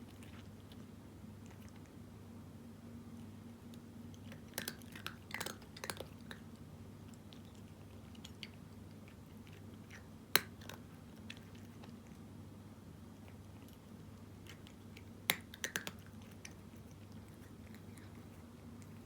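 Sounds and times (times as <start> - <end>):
steady low hum: 0.0 - 19.0
cat crunching dry kibble: 4.1 - 12.3, 13.1 - 19.0.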